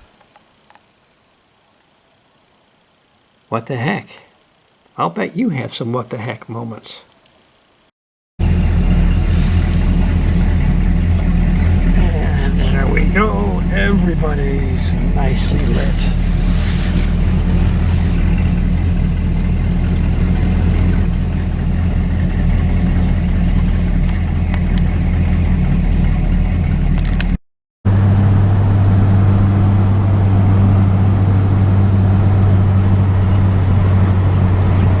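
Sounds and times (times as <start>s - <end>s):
car engine running: 8.4s - 35.0s.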